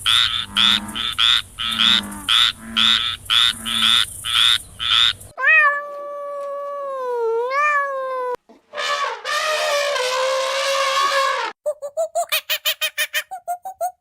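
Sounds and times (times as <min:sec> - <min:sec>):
frog croaking: 0:00.0 - 0:05.3
cat yowling: 0:05.4 - 0:08.4.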